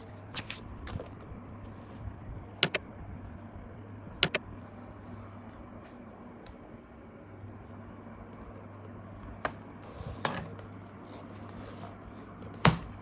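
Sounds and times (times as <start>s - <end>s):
low steady hum: 0.0s - 13.0s
sharp double clicks: 2.6s - 2.8s, 4.2s - 4.4s.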